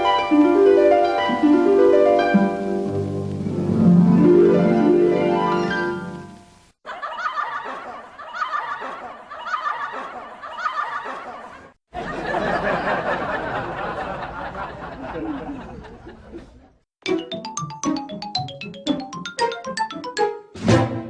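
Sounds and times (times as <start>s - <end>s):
plinking musical notes: 0.0s - 6.4s, 17.0s - 20.4s.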